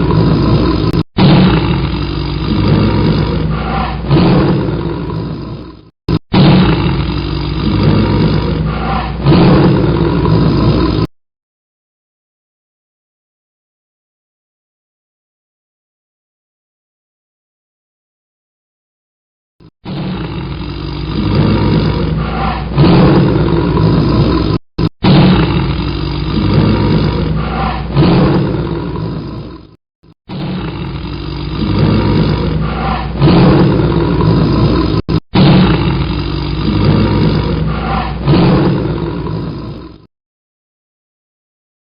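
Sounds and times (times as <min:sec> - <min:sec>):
tiger roaring and growling: 0:00.0 - 0:11.1, 0:19.8 - 0:40.1.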